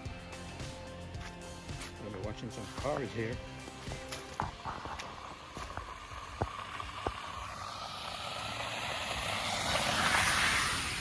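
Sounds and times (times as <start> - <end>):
car tyres on slush: 2.5 - 11.0.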